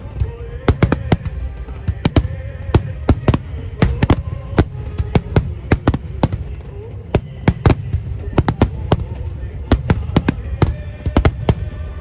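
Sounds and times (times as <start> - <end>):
low firework rumble: 0.0 - 12.0
firework shells bursting: 7.2 - 12.0.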